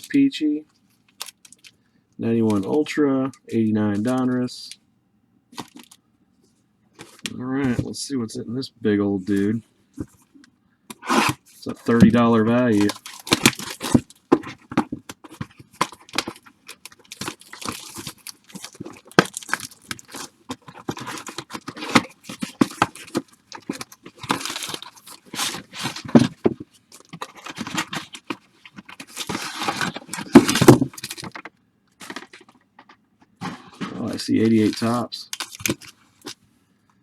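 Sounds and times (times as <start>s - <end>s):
plastic wrapping crinkling: 1.1s - 1.8s, 5.6s - 6.0s, 11.1s - 32.9s, 33.5s - 36.4s.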